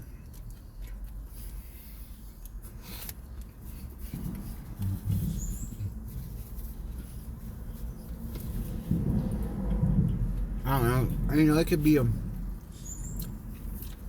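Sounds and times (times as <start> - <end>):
person chewing food: 0.0 - 10.5, 13.0 - 14.0
steady low rumble: 3.3 - 14.0.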